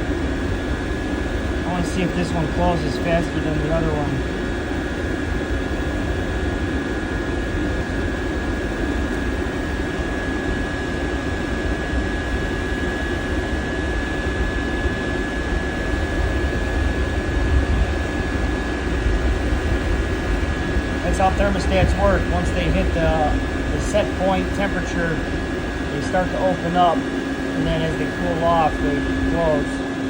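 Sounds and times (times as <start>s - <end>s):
thin high whine: 0.0s - 5.1s, 16.5s - 30.0s
heater burner and blower roar: 0.0s - 30.0s.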